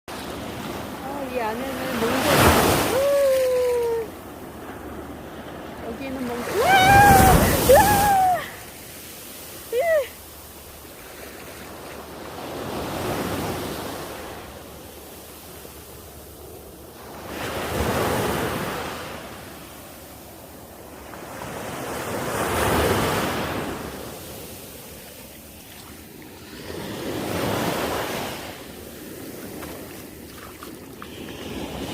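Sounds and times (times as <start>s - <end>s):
sea waves breaking: 0.1s - 16.3s, 20.8s - 31.9s.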